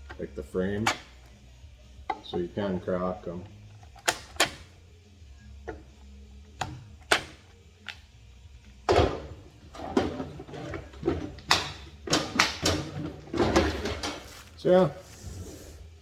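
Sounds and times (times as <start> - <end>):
tools clicking and knocking: 3.8 - 4.7, 6.6 - 8.0, 8.9 - 14.3.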